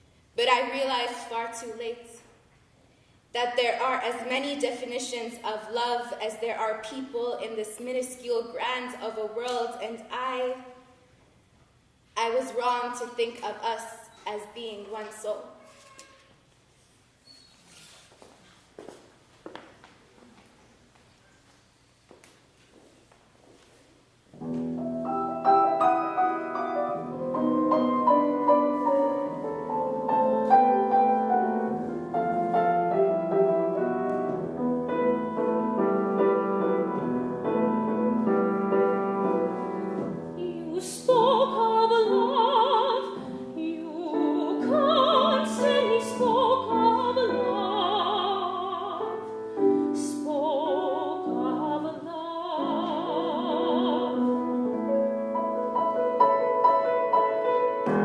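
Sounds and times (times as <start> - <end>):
piano playing: 24.4 - 58.0
soprano singing with vibrato: 40.4 - 54.6.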